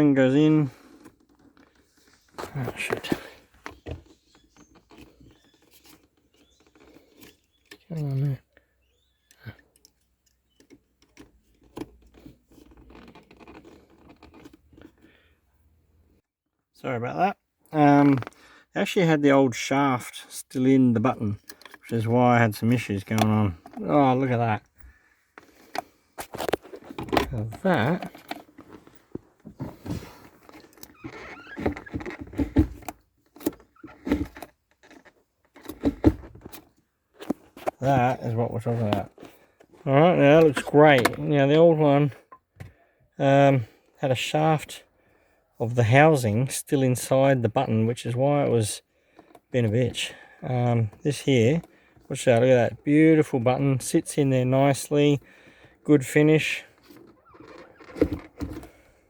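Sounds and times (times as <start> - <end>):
plastic parts clicking and scraping: 0.7 - 15.4, 20.9 - 41.3, 49.0 - 59.0.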